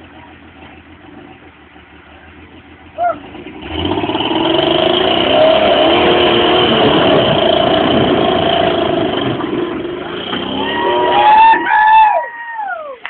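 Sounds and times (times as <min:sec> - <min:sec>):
engine revving hard: 0:03.2 - 0:11.7.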